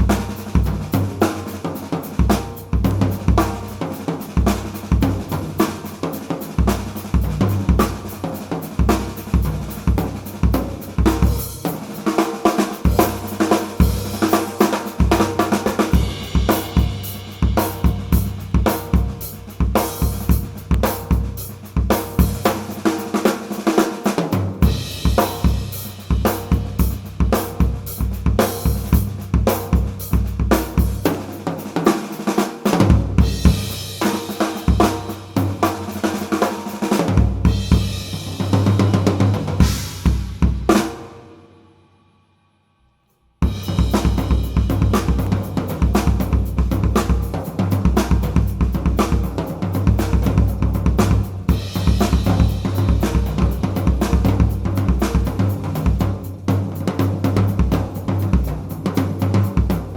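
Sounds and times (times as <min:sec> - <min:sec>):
cymbals washing: 0:00.0 - 0:23.7
drum kit groove: 0:00.0 - 0:41.3, 0:43.4 - 0:59.9.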